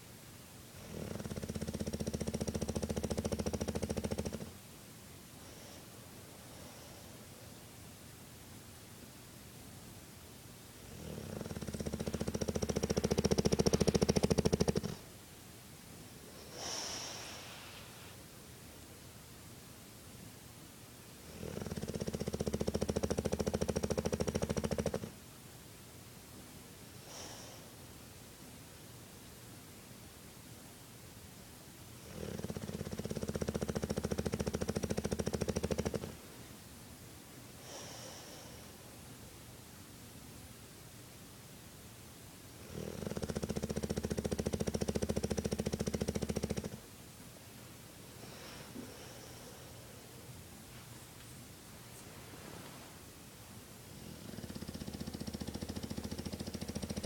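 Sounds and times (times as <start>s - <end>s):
soft hissing breath: 0.0s - 25.3s, 26.4s - 30.1s, 30.8s - 57.0s
dog snoring: 0.7s - 4.6s, 10.8s - 15.1s, 16.3s - 18.2s, 21.2s - 25.2s, 27.0s - 27.8s, 32.0s - 36.2s, 42.6s - 46.8s, 53.8s - 57.0s.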